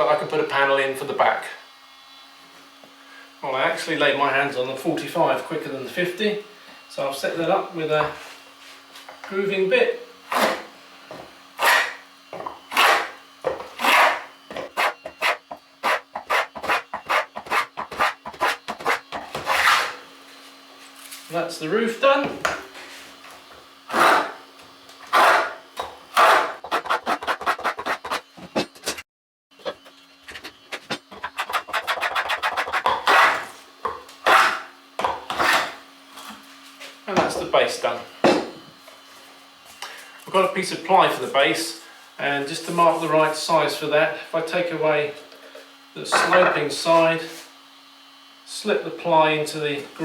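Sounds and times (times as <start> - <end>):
hand plane cutting wood: 10.3 - 20.0, 23.9 - 24.4, 25.0 - 29.0, 30.3 - 35.8.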